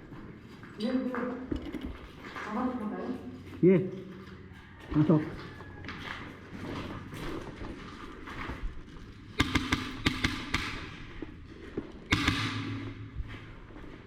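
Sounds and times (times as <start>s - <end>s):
airsoft gun rapid shots: 9.4s - 11.0s, 12.1s - 13.0s.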